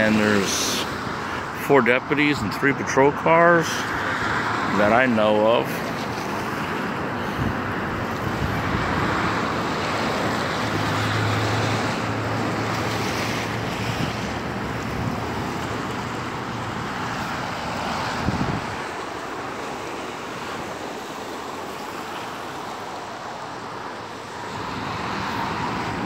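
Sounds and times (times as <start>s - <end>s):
road traffic: 0.0s - 26.0s
wind buffeting microphone: 6.1s - 10.6s, 13.7s - 19.0s.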